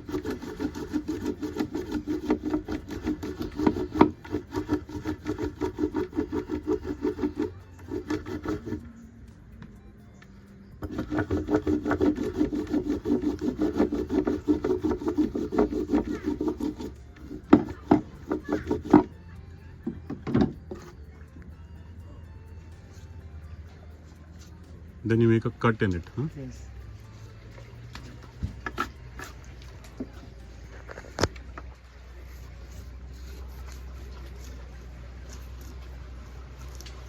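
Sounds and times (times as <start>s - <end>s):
metal rod scraping cinnamon stick: 0.0s - 9.1s, 10.8s - 19.2s, 28.0s - 31.3s, 32.1s - 37.0s.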